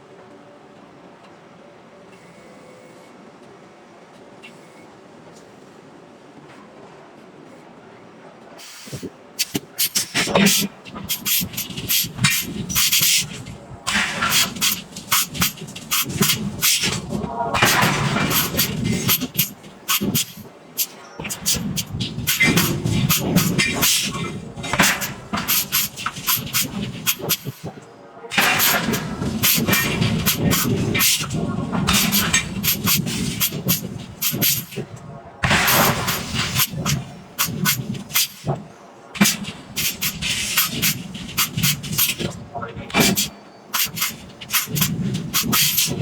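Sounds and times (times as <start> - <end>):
hissing bursts: 8.6 - 46.0
metal knocks and clanks: 10.0 - 20.5, 21.2 - 27.7, 28.3 - 46.0
low mechanical rumble: 10.1 - 43.3, 43.9 - 46.0.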